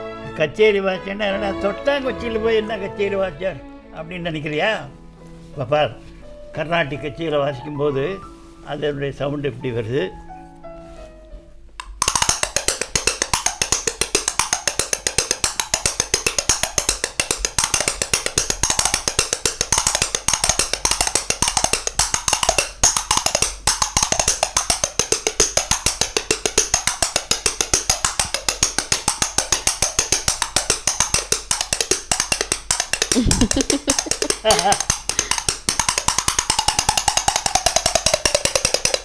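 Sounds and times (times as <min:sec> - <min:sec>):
coconut shells struck rhythmically: 0:11.8 - 0:39.0.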